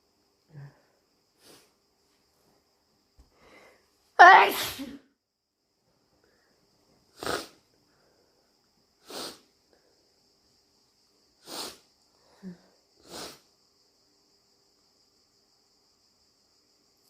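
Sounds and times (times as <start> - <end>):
person sniffing runny nose: 1.4 - 1.7, 7.1 - 7.6, 9.0 - 9.5, 11.4 - 11.9, 13.0 - 13.5.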